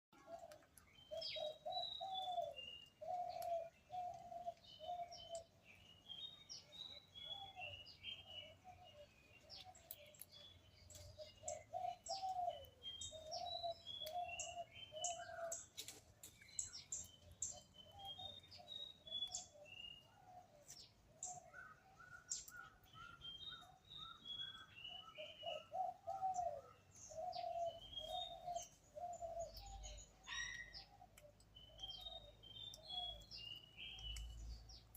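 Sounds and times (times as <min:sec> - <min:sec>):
bird song phrases: 0:00.1 - 0:34.9
sharp bird ticks: 0:00.2 - 0:05.5, 0:08.4 - 0:20.0, 0:22.2 - 0:23.8, 0:27.0 - 0:34.9.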